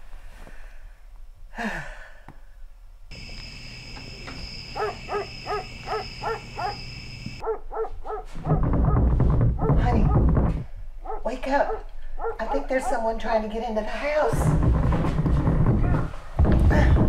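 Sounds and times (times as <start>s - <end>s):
animal yelping: 4.7s - 8.6s, 11.0s - 13.0s.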